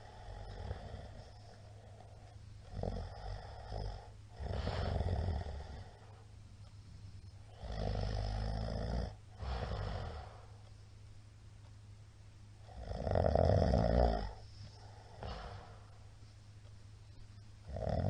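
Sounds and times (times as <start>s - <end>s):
man snoring loudly: 0.0s - 1.4s, 2.7s - 6.0s, 7.6s - 10.4s, 12.7s - 14.4s, 17.7s - 18.0s.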